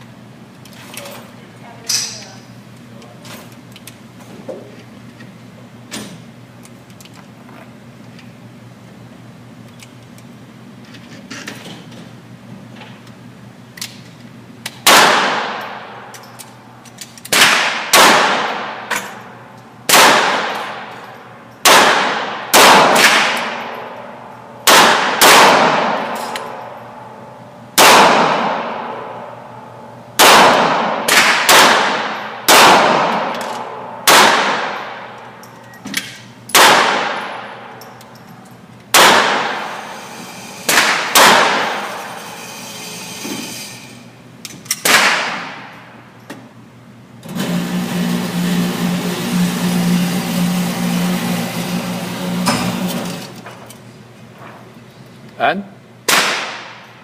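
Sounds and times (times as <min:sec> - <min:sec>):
steady low hum: 0:00.0 - 0:57.0
gunshots with ringing echo: 0:14.8 - 0:16.1, 0:17.3 - 0:18.9, 0:19.9 - 0:20.9, 0:21.6 - 0:27.2, 0:27.8 - 0:29.4, 0:30.2 - 0:35.2, 0:36.5 - 0:37.8, 0:38.9 - 0:40.0, 0:40.6 - 0:42.2.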